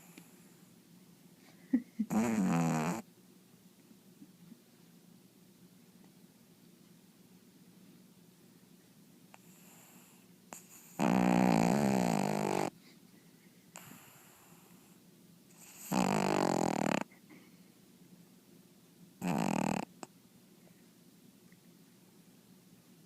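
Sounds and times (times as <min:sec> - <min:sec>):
dog snoring loudly: 0:02.1 - 0:03.0, 0:09.4 - 0:12.7, 0:13.8 - 0:14.9, 0:15.5 - 0:17.1, 0:19.2 - 0:20.0.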